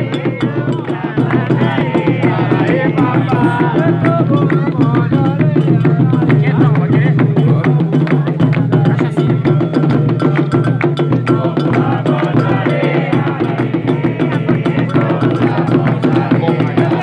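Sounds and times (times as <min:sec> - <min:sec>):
bell-like percussion: 0:00.0 - 0:17.0
drums: 0:00.0 - 0:17.0.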